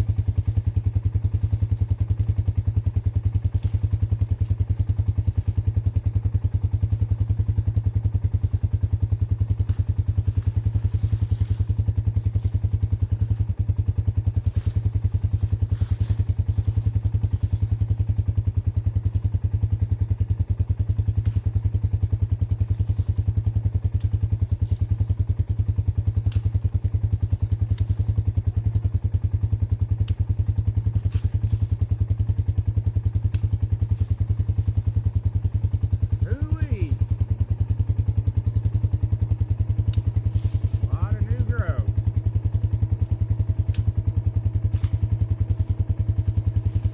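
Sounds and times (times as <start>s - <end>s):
atv engine idling: 0.0s - 46.9s.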